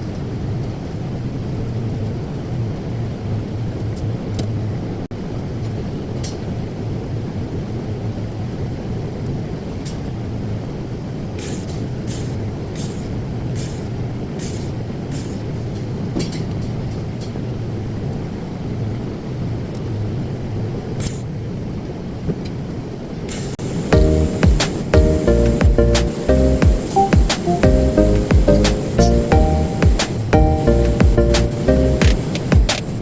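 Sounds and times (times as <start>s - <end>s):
welding arc hissing and buzzing: 23.3s - 33.0s.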